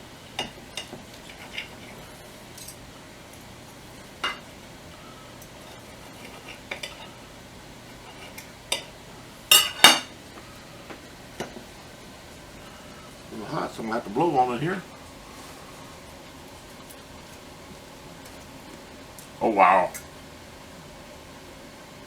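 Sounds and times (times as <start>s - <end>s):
knife and fork scraping plate: 5.6s - 7.2s.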